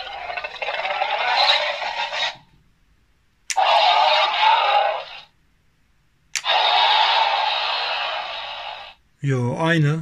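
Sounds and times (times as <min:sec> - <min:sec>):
electronic dinosaur roar: 0:00.0 - 0:02.4, 0:03.5 - 0:05.3, 0:06.4 - 0:09.0.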